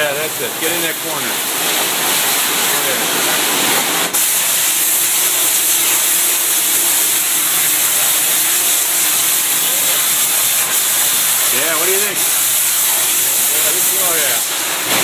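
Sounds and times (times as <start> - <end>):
pressure washer spray hissing: 0.0 - 15.0.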